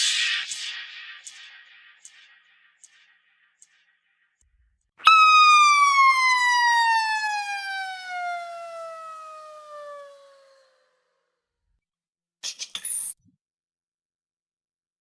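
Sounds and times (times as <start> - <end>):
cartoon falling whistle: 5.0 - 10.8.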